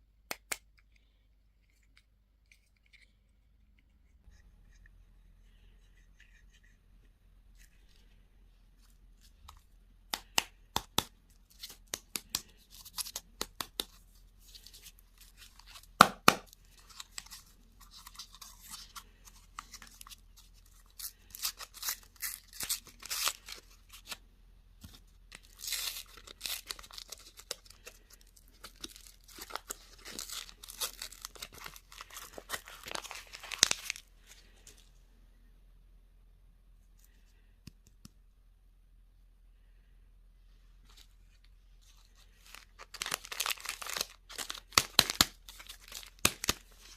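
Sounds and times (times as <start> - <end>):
wrappers tearing and crinkling: 16.7 - 24.2, 25.3 - 34.0, 42.4 - 46.9.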